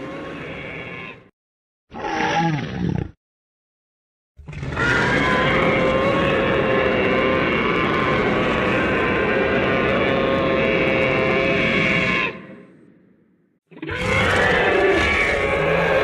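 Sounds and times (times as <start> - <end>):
dinosaur roar: 0.0 - 1.3, 4.4 - 12.8, 13.7 - 16.0.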